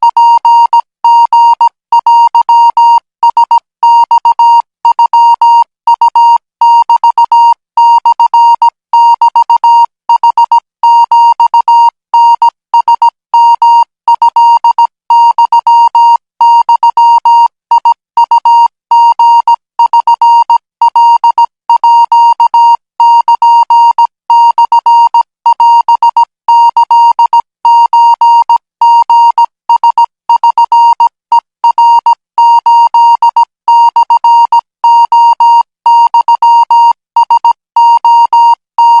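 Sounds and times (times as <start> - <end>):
morse code beeps: 0.0 - 39.0.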